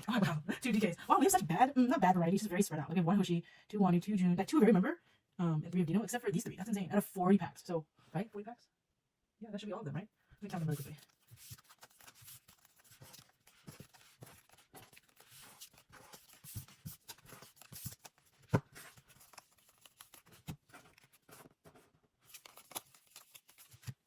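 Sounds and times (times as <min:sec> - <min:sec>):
trading cards rustling and tapping: 0:10.5 - 0:24.0.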